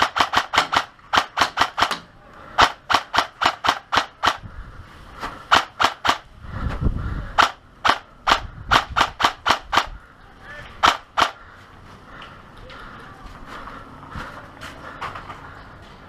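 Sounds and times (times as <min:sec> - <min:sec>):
airsoft gun shots: 0:00.0 - 0:04.4, 0:05.5 - 0:06.3, 0:07.4 - 0:10.0, 0:10.8 - 0:11.4.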